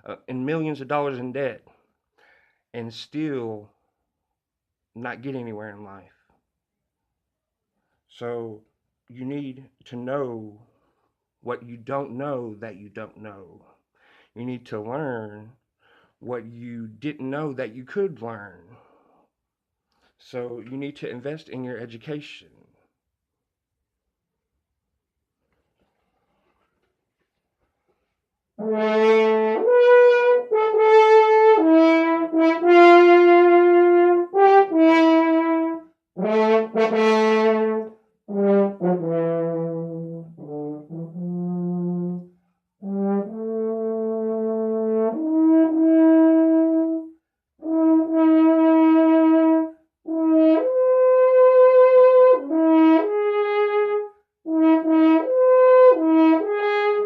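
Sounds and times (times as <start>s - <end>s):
brass horn playing held notes: 28.6s - 57.0s.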